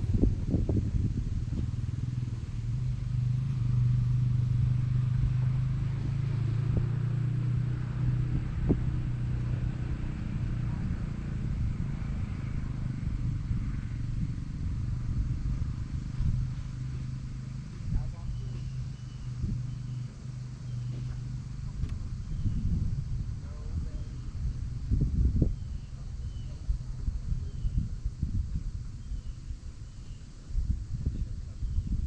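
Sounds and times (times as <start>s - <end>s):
boat motor humming: 0.0s - 0.4s, 1.1s - 24.9s.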